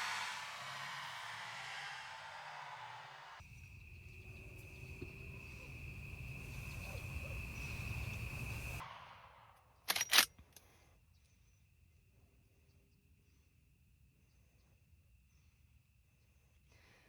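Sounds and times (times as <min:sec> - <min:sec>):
low rumble: 0:00.0 - 0:08.8
high-pitched insect trill: 0:03.4 - 0:08.8
sharp loud clicks: 0:09.9 - 0:10.3.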